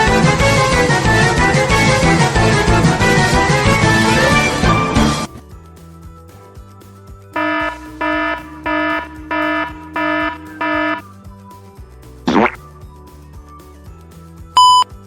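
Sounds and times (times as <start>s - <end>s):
electronic alarm beeps: 7.4s - 11.0s, 12.3s - 12.6s, 14.6s - 14.9s.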